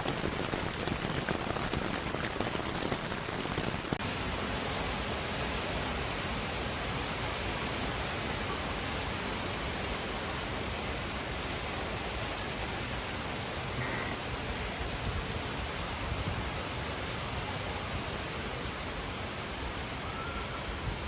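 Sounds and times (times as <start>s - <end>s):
steady even hiss: 0.0s - 4.0s
rain patter: 0.0s - 21.0s.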